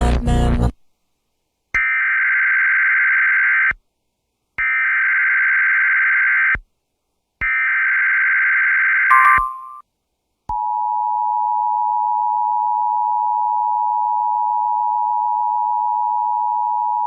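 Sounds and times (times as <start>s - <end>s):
two-tone digital data warble: 9.1s - 9.8s.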